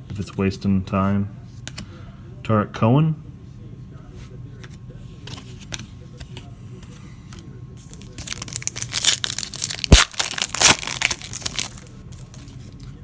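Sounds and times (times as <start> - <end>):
plastic packaging crinkling: 7.9 - 12.9.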